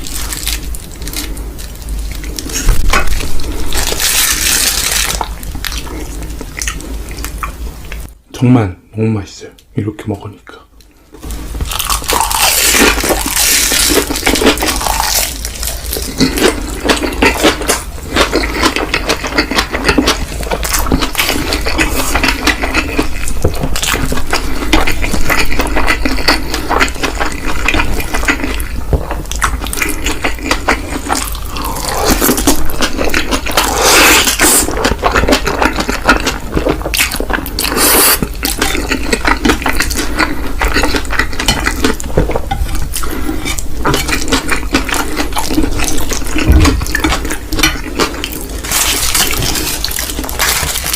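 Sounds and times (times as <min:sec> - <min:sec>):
noodles slurped and chewed: 0:11.2 - 0:50.9.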